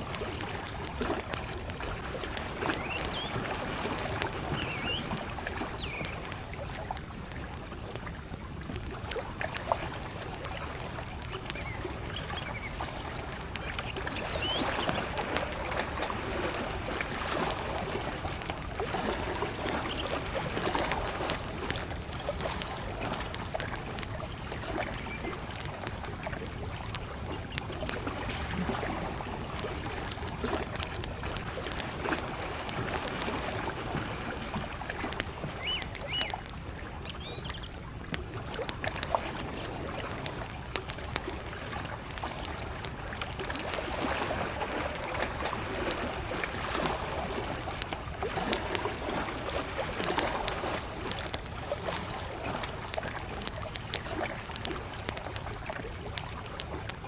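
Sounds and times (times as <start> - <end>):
campfire crackling and popping: 0.0 - 57.0
lake waves lapping on shore: 0.0 - 57.0
distant bird chirps: 2.8 - 3.4, 4.5 - 6.2, 7.8 - 8.4, 13.8 - 15.0, 35.6 - 36.4, 37.1 - 37.8, 39.6 - 40.2.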